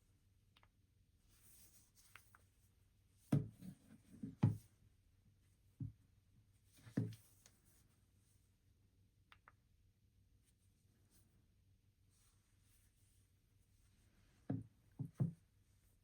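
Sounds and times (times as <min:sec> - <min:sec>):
hands knocking and rubbing objects: 0:14.4 - 0:15.5.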